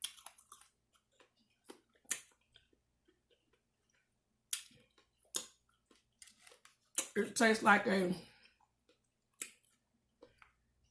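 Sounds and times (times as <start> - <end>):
mouth chewing: 0.0 - 7.2, 8.4 - 10.9
wet lip and tongue smacks: 8.9 - 10.5.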